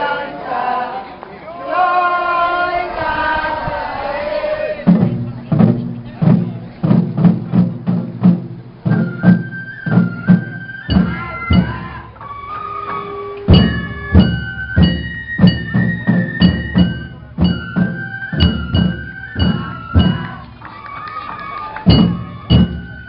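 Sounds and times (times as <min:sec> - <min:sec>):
drum rhythm: 0:04.8 - 0:23.0
bamboo flute melody: 0:06.9 - 0:23.0.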